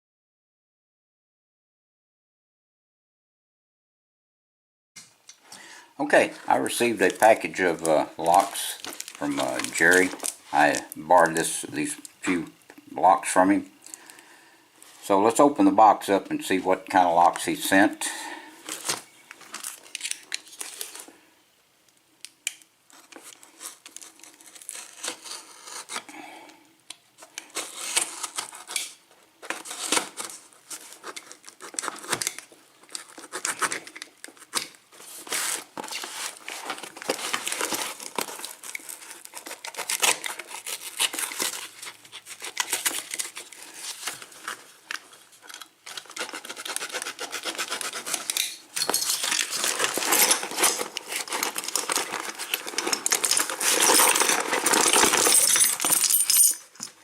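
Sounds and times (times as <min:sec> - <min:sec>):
wrapping rustling and tearing: 0:06.2 - 0:12.4, 0:18.6 - 0:21.2, 0:22.5 - 0:26.1, 0:27.2 - 0:57.0
metal padlocks clinking: 0:48.3 - 0:50.9, 0:52.5 - 0:57.0.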